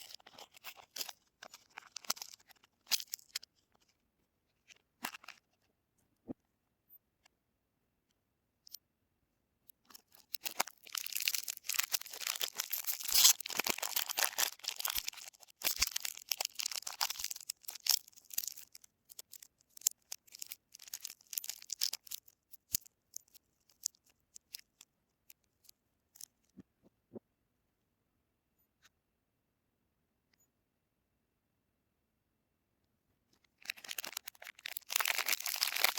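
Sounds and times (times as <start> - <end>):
wrapper tearing and crinkling: 0.0 - 3.4, 9.9 - 24.6, 33.6 - 35.9.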